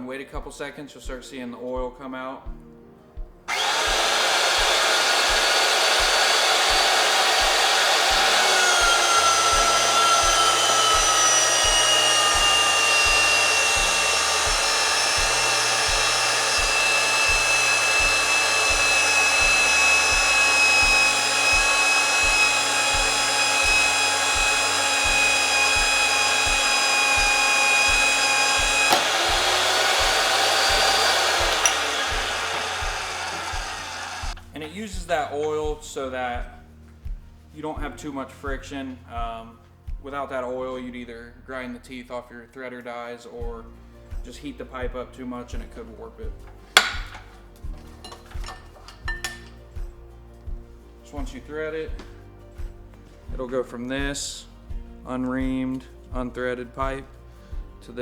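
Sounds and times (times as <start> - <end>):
pipe-threading machine whining: 3.5 - 35.8, 45.5 - 49.9.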